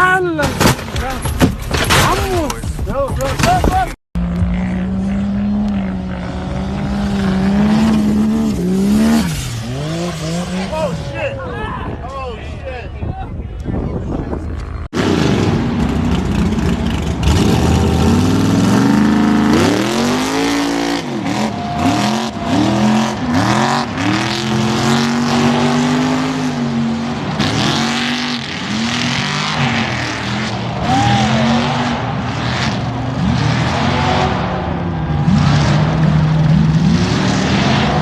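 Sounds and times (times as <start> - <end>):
vehicle engine revving hard: 4.2 - 11.1, 15.0 - 38.0.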